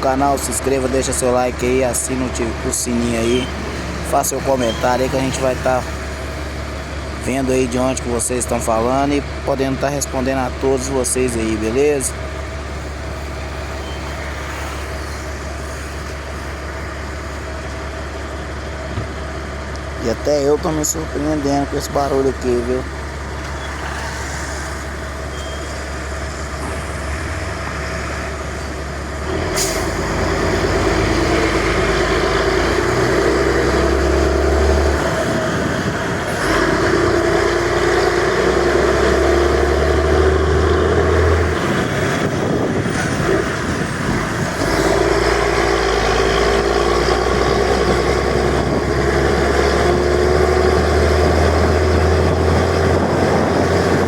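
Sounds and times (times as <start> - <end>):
diesel bus engine revving: 0.0 - 54.0.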